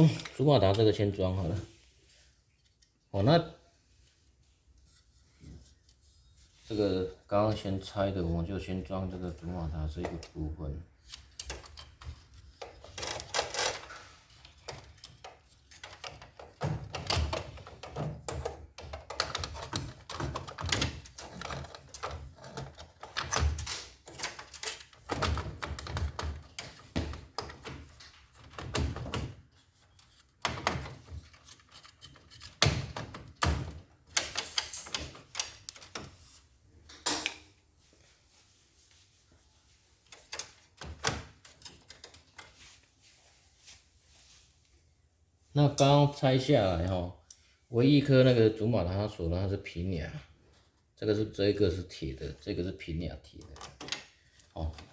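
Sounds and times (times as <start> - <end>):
metal and plastic parts rattling: 11.0 - 36.2, 40.0 - 42.8.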